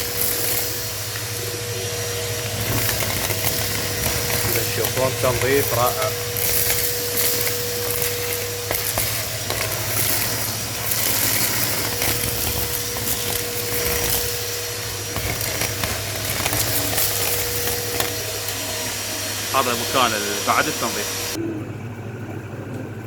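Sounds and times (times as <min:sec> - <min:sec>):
vacuum cleaner running: 0:00.0 - 0:23.0
debris ticks: 0:02.4 - 0:18.6.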